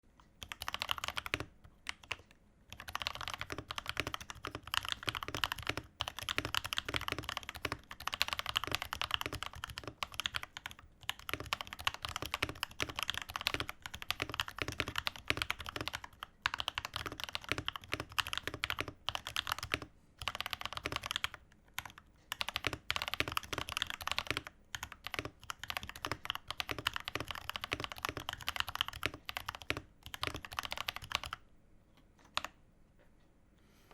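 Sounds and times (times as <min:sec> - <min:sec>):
mechanical keyboard typing: 0:00.4 - 0:31.4, 0:32.2 - 0:32.6.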